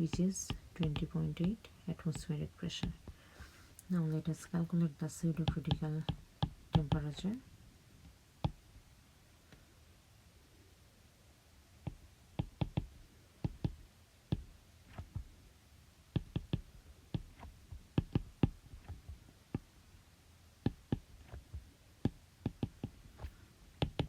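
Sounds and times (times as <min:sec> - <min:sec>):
sharp clicks and taps: 0:00.0 - 0:03.2, 0:04.8 - 0:07.4, 0:11.9 - 0:15.3, 0:16.2 - 0:19.7, 0:20.7 - 0:23.0, 0:23.8 - 0:24.0.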